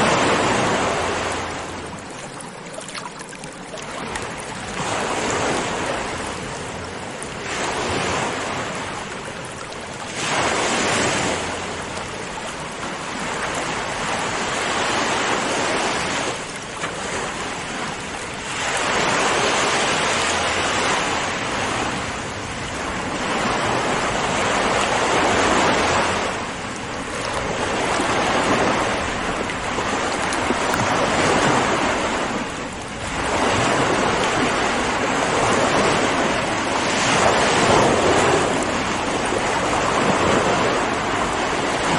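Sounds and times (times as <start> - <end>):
sea waves breaking: 0.0 - 41.9.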